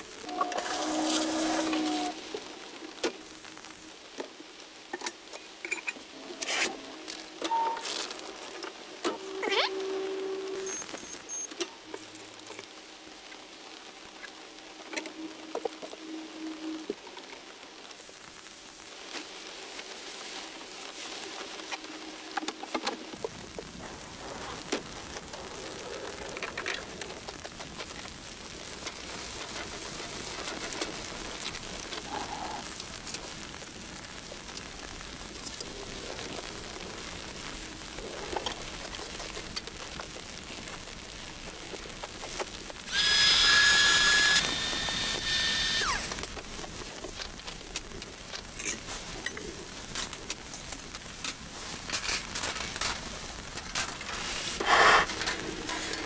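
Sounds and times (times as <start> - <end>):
rain pattering: 2.2 - 6.2, 11.5 - 42.9, 46.1 - 56.0
loud high steady tone: 42.9 - 46.1.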